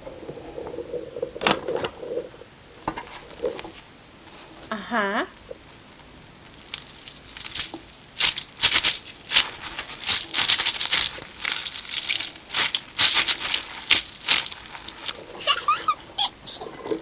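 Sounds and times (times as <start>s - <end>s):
toys rattling: 6.7s - 17.0s.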